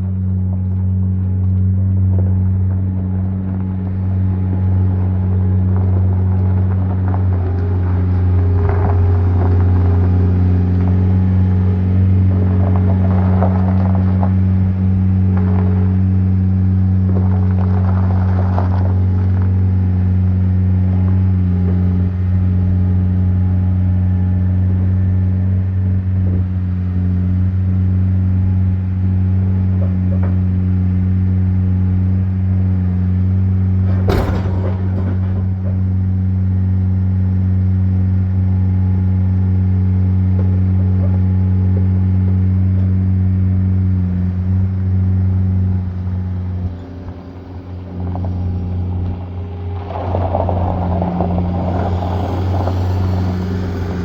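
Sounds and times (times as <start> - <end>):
diesel engine running: 0.0 - 54.0
sharp metallic clank: 34.0 - 35.5.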